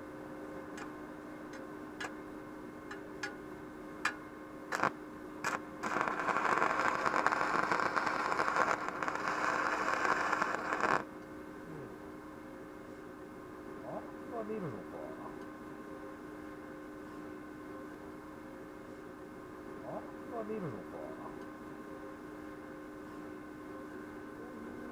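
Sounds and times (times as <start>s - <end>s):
low hum: 0.0s - 12.2s
welding arc popping and sizzling: 4.0s - 11.1s.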